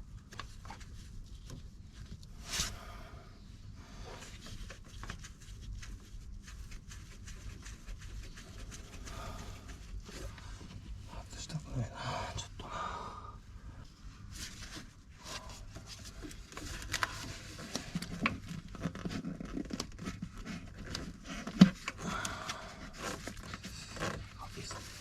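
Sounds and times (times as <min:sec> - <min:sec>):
objects scraping and rustling: 0:22.8 - 0:25.0.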